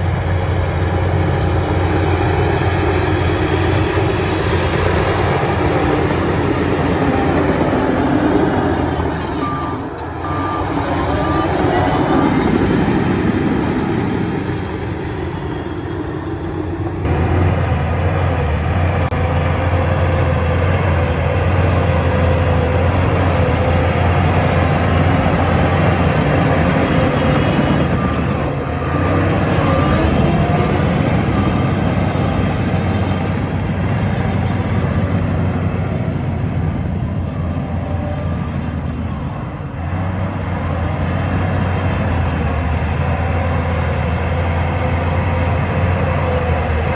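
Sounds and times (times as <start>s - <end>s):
bulldozer diesel engine: 0.0s - 46.9s.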